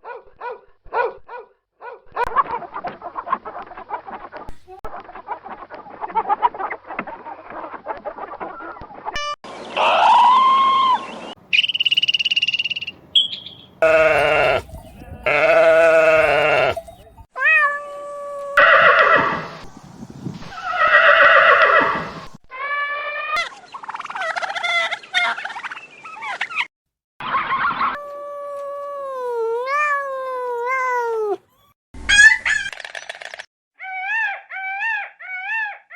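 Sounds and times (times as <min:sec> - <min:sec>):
farm animal calls: 0:11.6 - 0:17.3.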